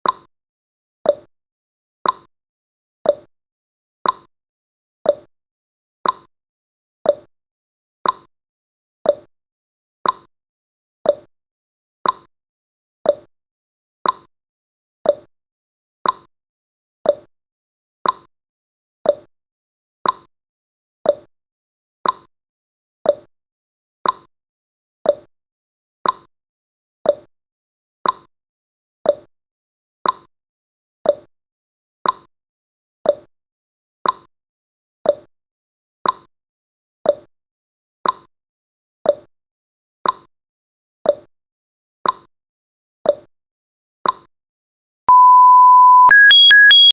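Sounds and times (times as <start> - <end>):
steady beep: 45.1 - 46.9
timer ticking: 45.1 - 46.9.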